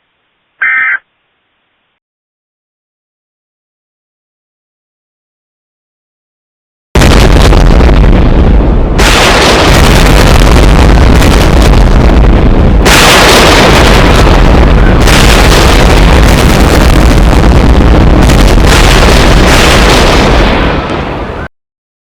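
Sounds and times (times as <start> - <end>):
loud distorted rumbling: 7.0 - 21.5.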